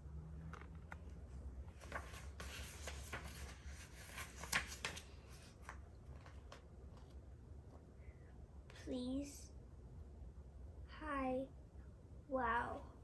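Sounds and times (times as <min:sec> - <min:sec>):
paper rustling: 0:01.7 - 0:07.2.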